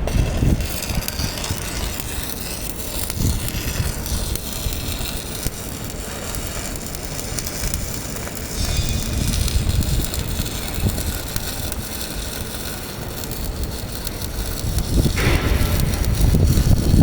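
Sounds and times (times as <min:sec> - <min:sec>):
welding arc crackling hiss: 0:00.0 - 0:17.0
low rumble: 0:15.0 - 0:17.0.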